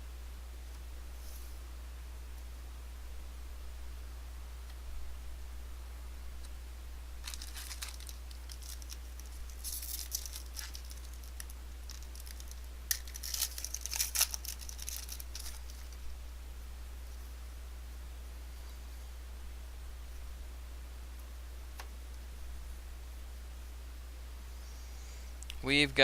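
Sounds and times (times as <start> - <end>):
steady low hum: 0.0 - 26.0
foil wrappers tearing and crinkling: 7.2 - 16.0.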